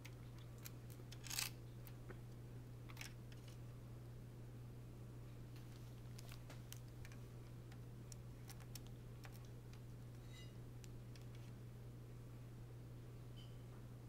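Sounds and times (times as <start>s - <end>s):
laptop parts clicking: 0.0s - 1.6s, 6.1s - 9.9s
steady low hum: 0.0s - 14.0s
light ring: 10.2s - 10.6s, 13.3s - 13.7s.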